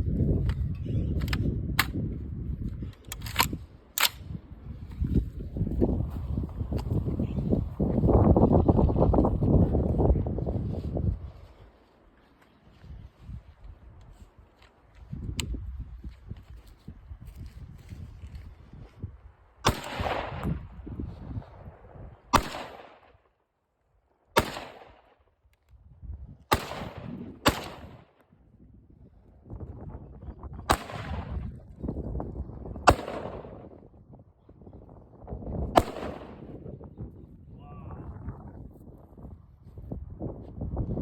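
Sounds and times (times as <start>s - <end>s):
rifle shots with echo: 19.6s - 20.7s, 22.3s - 23.3s, 24.4s - 25.2s, 26.5s - 28.2s, 30.7s - 31.5s, 32.8s - 33.7s, 35.8s - 36.6s.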